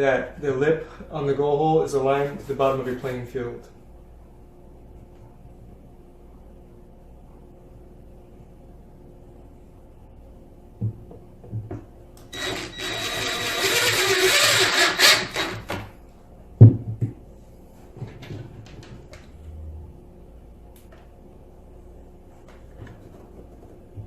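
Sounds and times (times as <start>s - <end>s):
power drill driving screw into wood: 12.4s - 15.9s.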